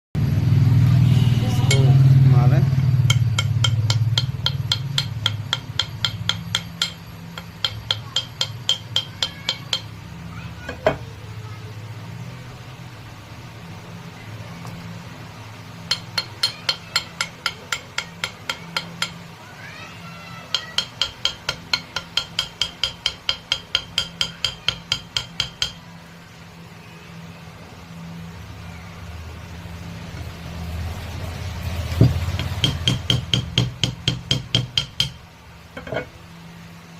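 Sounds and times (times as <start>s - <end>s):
low steady hum: 0.2s - 36.9s
hammer tapping on metal: 1.6s - 2.0s, 3.0s - 10.0s, 10.7s - 11.0s, 15.8s - 19.3s, 20.4s - 25.9s, 31.8s - 36.2s.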